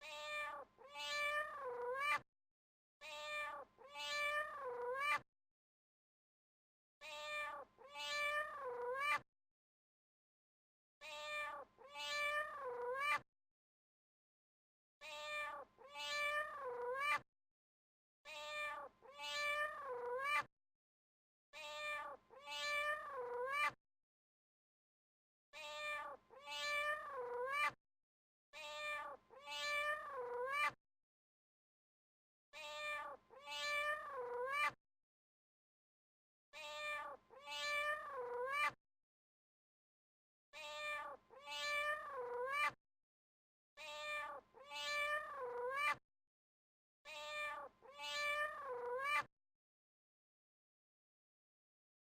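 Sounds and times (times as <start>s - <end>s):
cat meowing: 0.0s - 2.2s, 3.0s - 5.2s, 7.0s - 9.2s, 11.0s - 13.2s, 15.0s - 17.2s, 18.3s - 20.5s, 21.6s - 23.8s, 25.6s - 27.8s, 28.6s - 30.8s, 32.6s - 34.8s, 36.6s - 38.8s, 40.6s - 42.8s, 43.8s - 46.0s, 47.1s - 49.3s.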